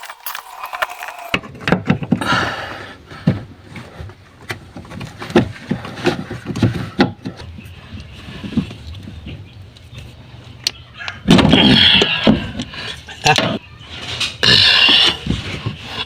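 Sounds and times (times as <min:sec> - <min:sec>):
tools and metal parts knocking: 0:00.0 - 0:01.4.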